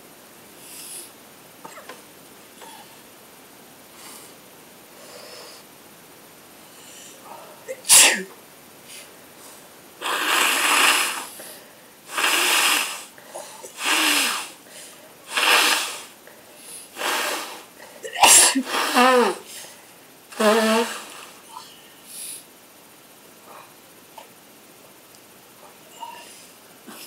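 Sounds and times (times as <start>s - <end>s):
person sneezing: 7.7s - 8.3s, 12.1s - 14.6s, 17.0s - 19.6s, 20.3s - 21.6s
nose blowing into handkerchief: 10.0s - 11.3s, 12.1s - 13.1s, 13.8s - 14.6s, 15.3s - 16.1s, 17.0s - 17.6s, 18.2s - 19.4s, 20.4s - 21.4s.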